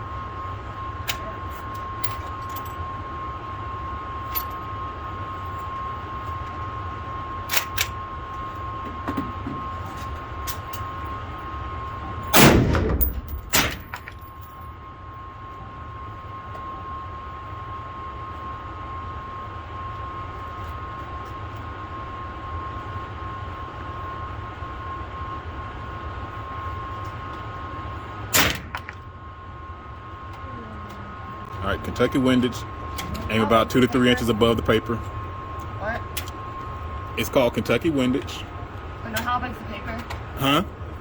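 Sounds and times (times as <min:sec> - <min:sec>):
rifle shots with echo: 0:12.3 - 0:13.8, 0:28.4 - 0:29.0.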